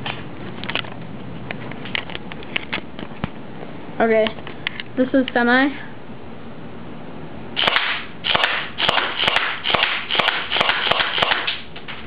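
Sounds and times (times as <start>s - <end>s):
airsoft pistol shots: 7.6s - 11.7s.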